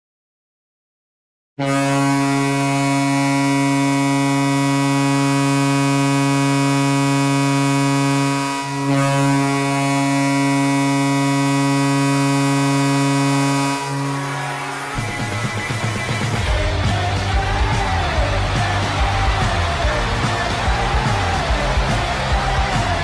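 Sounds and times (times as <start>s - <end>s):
goal horn blowing deep blast: 1.6s - 20.3s.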